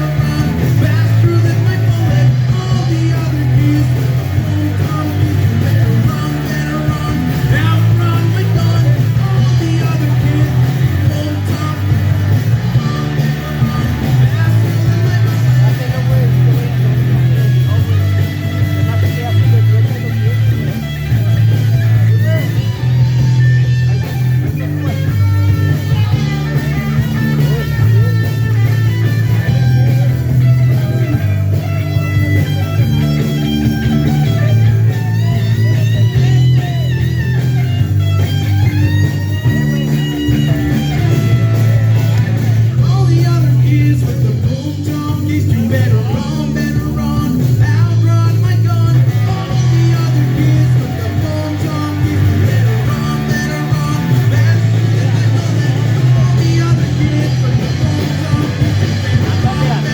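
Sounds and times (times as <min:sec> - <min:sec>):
bass line: 0:00.0 - 0:59.9
electric guitar: 0:00.0 - 0:59.9
rock band playing: 0:00.0 - 0:59.9.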